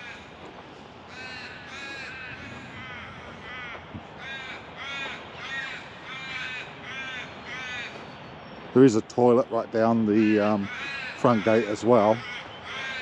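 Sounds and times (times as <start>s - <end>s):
crows cawing: 0.0s - 13.0s.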